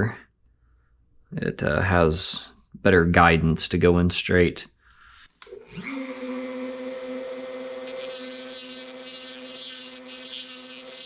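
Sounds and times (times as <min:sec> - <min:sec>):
electric rotary tool running: 0:05.4 - 0:11.0
burr grinding metal: 0:07.6 - 0:11.0.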